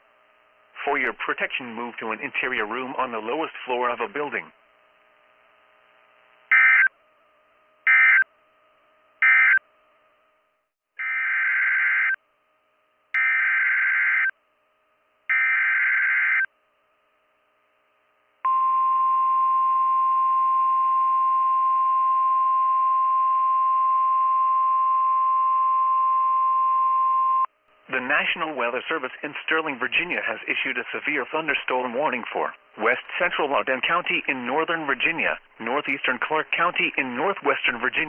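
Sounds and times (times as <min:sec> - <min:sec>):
screeching digital data bursts: 0:06.5 - 0:06.9
steady alarm tone: 0:06.5 - 0:07.0, 0:07.8 - 0:08.3, 0:09.2 - 0:09.6, 0:11.0 - 0:12.2, 0:13.2 - 0:14.3, 0:15.3 - 0:16.5.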